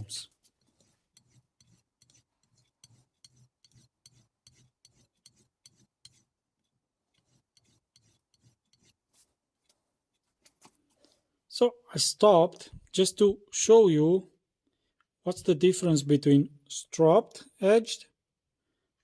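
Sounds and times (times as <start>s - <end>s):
knife stropping strokes: 0.0s - 11.2s.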